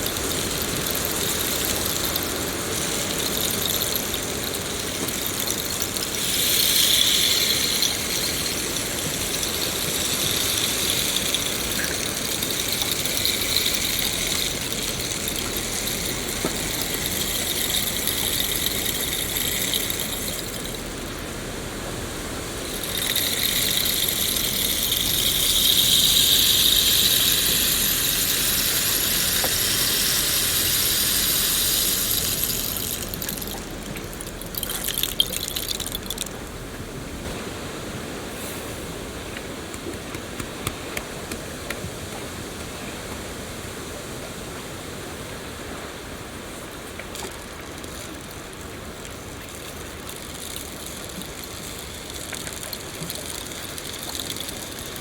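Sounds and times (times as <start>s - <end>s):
scattered drips and taps: 0.0s - 21.2s, 22.7s - 36.4s, 47.0s - 55.0s
rain falling: 0.0s - 43.2s, 46.7s - 55.0s.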